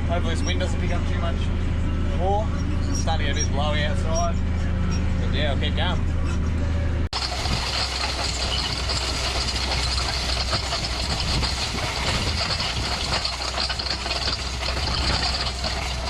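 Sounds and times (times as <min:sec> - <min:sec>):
tractor engine running: 0:00.0 - 0:16.0
wind noise: 0:07.2 - 0:16.0.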